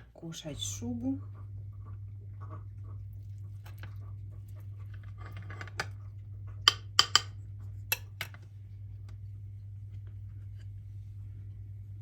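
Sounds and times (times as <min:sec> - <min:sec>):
low hum: 0:00.0 - 0:12.0
cutlery clinking against a dish: 0:06.7 - 0:08.4.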